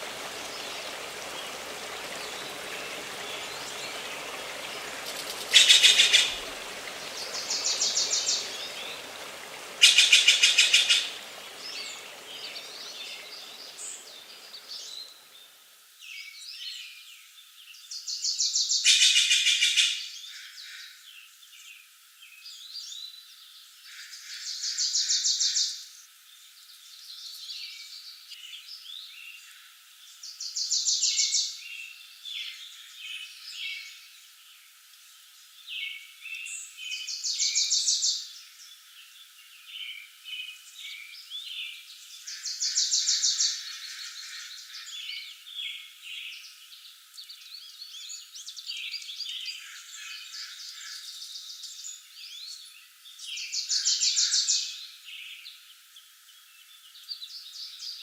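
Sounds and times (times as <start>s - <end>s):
rushing stream-like noise: 0.0s - 16.2s
songbirds singing: 0.0s - 58.0s.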